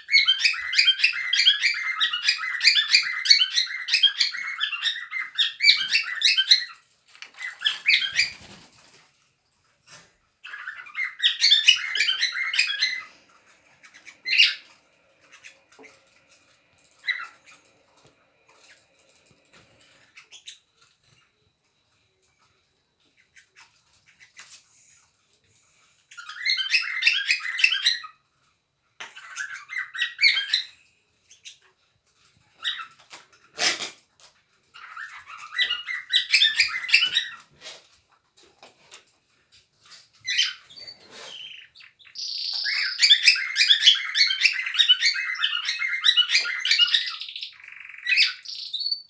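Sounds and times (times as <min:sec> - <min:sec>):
cockatiels chattering: 0:00.0 - 0:08.9, 0:09.9 - 0:21.2, 0:26.0 - 0:28.2, 0:29.0 - 0:31.8, 0:32.4 - 0:34.0, 0:34.7 - 0:37.8, 0:40.2 - 0:49.0.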